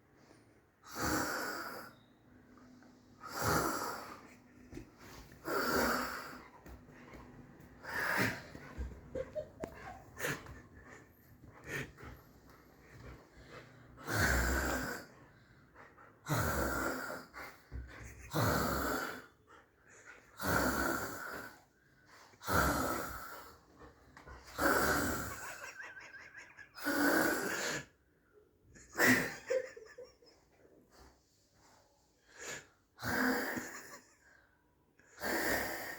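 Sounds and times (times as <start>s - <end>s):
person snoring: 0.9s - 1.9s, 3.2s - 4.2s, 5.4s - 6.4s, 14.0s - 15.1s, 20.4s - 21.5s.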